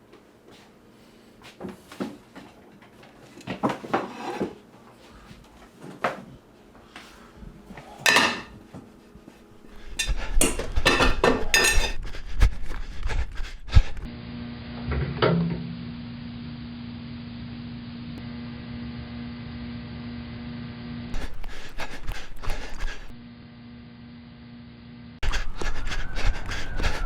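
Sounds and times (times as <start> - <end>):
dishes and cutlery clinking: 8.0 - 8.6, 9.9 - 12.0.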